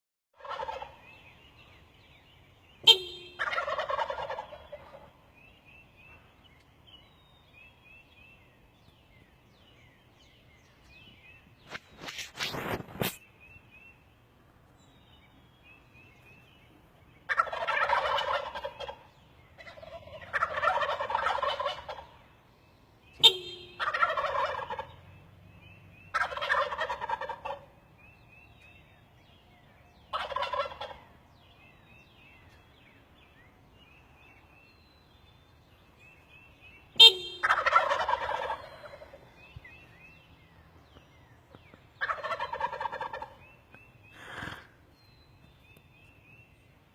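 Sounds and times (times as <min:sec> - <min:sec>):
turkeys gobbling: 0:00.4 - 0:01.0, 0:03.3 - 0:05.2, 0:17.3 - 0:22.3, 0:23.7 - 0:25.0, 0:26.1 - 0:27.8, 0:30.0 - 0:31.2, 0:37.0 - 0:39.5, 0:40.8 - 0:44.7.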